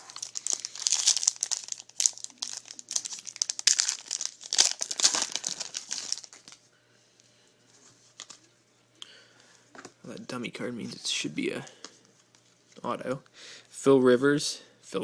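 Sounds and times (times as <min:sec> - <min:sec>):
foil wrapper crinkling and tearing: 0:00.0 - 0:06.6.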